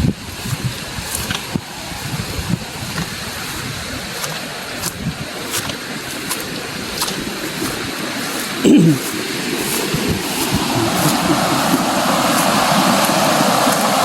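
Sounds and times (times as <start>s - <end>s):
running water: 0.0s - 14.0s.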